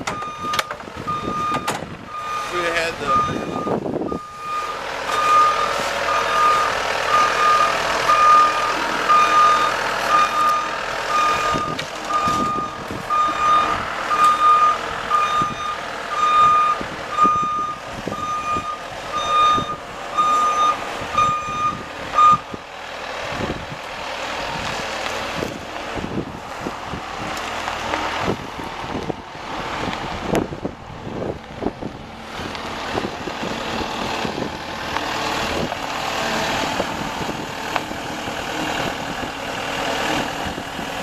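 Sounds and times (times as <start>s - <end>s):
clunks: 0.0s - 2.5s
vehicle backup alarm beeping: 0.0s - 22.6s
engine running: 0.0s - 41.0s.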